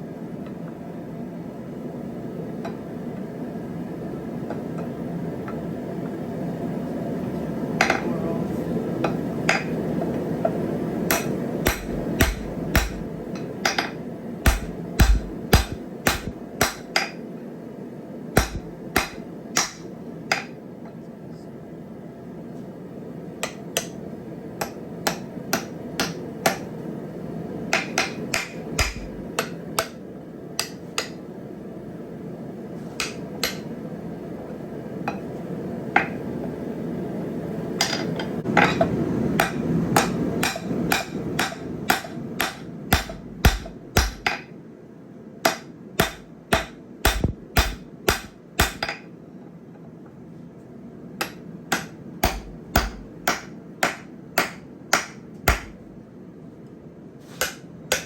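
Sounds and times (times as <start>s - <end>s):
steady background noise: 0.0s - 58.0s
hammer striking steel on anvil: 11.1s - 17.2s, 18.4s - 20.6s, 24.6s - 26.7s, 27.7s - 30.0s, 30.6s - 31.2s, 33.0s - 33.7s, 37.8s - 44.5s, 45.5s - 49.0s, 51.2s - 55.8s, 57.4s - 58.0s.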